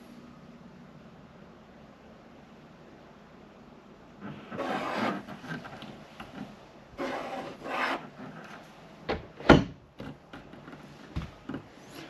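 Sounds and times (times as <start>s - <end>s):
wooden cabinet sliding: 4.2s - 9.8s.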